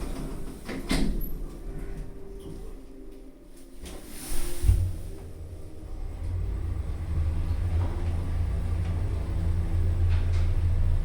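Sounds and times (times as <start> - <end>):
lift car rumbling: 3.9 - 11.0.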